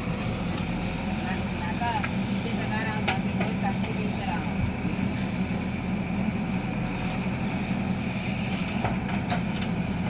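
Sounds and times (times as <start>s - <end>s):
large diesel engine running: 0.0s - 10.0s.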